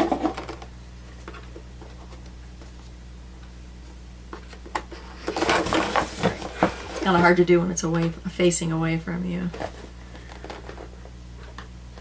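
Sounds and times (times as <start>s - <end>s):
steady low hum: 0.0s - 12.0s
packaging ticks and rustles: 4.3s - 7.3s, 9.5s - 11.7s.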